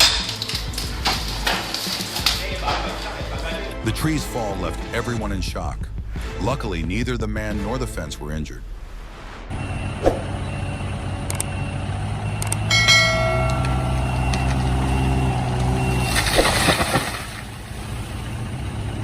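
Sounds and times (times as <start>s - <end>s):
higher tone: 9.5s - 16.2s
vehicle engine running: 9.5s - 19.0s.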